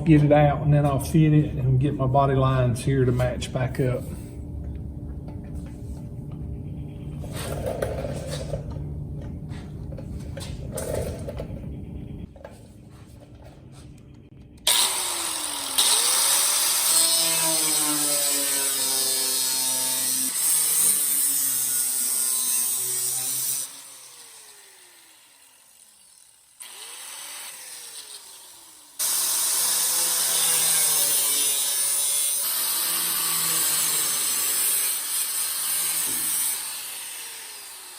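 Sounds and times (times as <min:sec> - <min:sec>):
power tool cutting sheet metal: 0:14.7 - 0:37.9.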